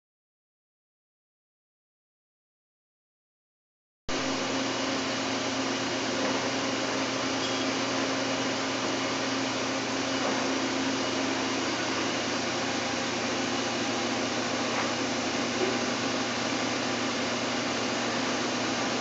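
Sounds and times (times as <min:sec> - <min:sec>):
machinery whirring and humming: 0:04.1 - 0:19.0.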